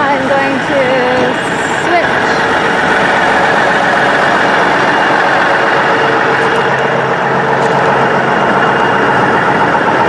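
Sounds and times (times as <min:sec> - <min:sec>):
truck engine droning: 0:00.0 - 0:10.0.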